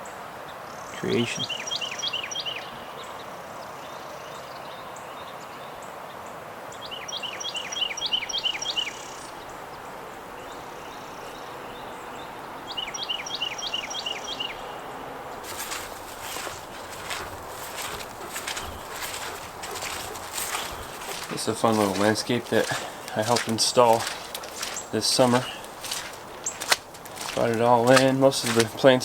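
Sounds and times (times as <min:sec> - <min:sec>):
songbird singing: 0:06.8 - 0:09.5, 0:15.4 - 0:29.0.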